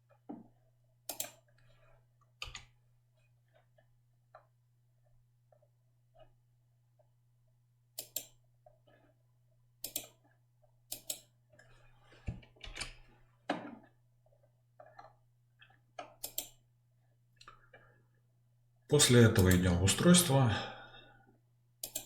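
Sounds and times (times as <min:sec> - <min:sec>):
computer mouse clicks: 0:01.1 - 0:01.6, 0:08.0 - 0:08.4, 0:09.8 - 0:10.2, 0:10.9 - 0:11.3, 0:14.8 - 0:16.6, 0:21.8 - 0:22.0.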